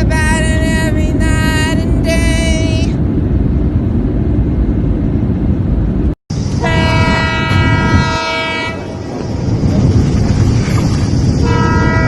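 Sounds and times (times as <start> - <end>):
train rumbling: 0.0 - 12.0
train horn blast: 6.6 - 9.0, 11.4 - 12.0.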